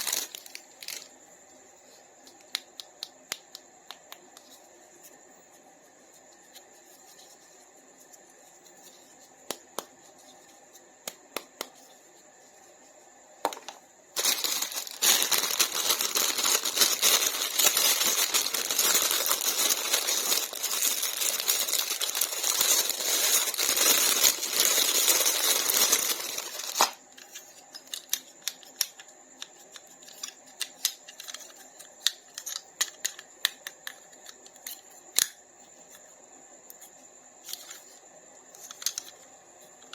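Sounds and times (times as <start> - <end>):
packaging crinkling and rustling: 0.0 - 1.1, 14.2 - 28.2.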